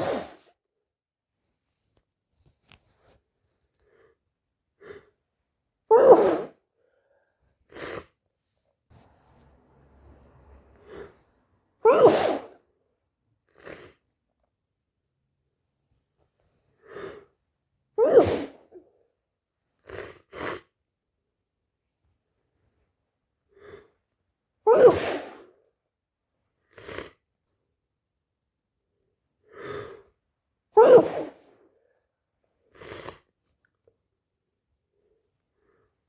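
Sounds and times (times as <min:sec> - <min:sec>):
person sneezing: 0:05.9 - 0:06.6, 0:11.8 - 0:12.6, 0:18.0 - 0:18.6, 0:24.7 - 0:25.4, 0:30.8 - 0:31.5.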